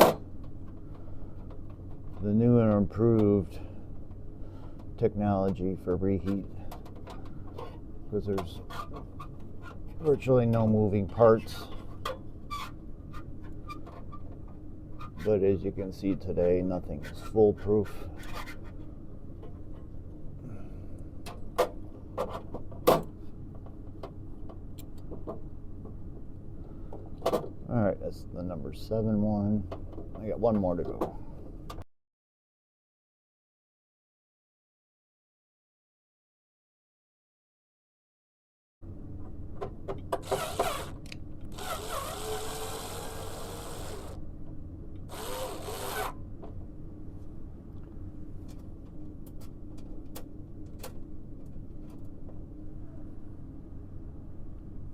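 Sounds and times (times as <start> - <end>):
steady low hum: 0.1 - 31.8, 38.8 - 54.9
power drill whining: 40.2 - 44.2, 45.1 - 46.2.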